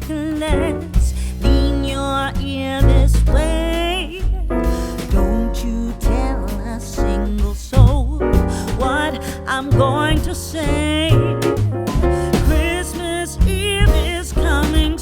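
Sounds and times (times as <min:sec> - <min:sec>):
steady bass line: 0:00.0 - 0:15.0.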